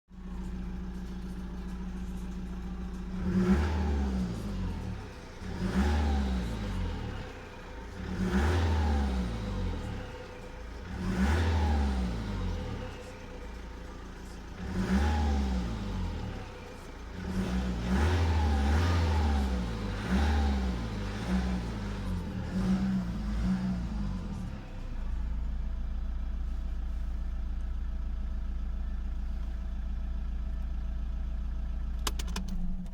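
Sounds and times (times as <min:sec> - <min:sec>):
car engine idling and revving: 0:00.0 - 0:32.9.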